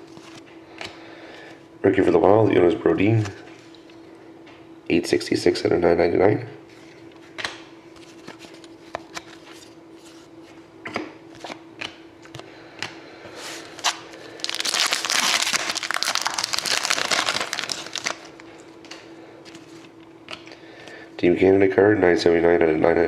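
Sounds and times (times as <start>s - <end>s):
wrapper crinkling: 13.7s - 18.5s.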